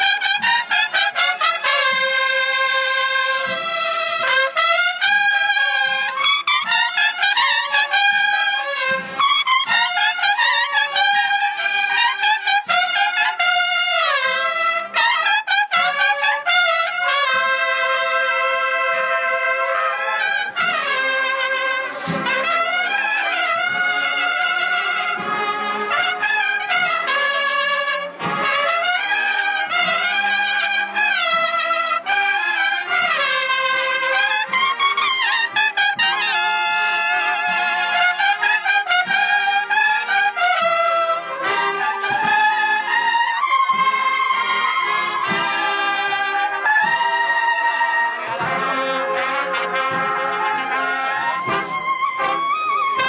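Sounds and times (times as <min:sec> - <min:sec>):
cornets holding long notes: 0:00.0 - 0:53.0
drum strokes: 0:20.2 - 0:32.2, 0:32.9 - 0:53.0.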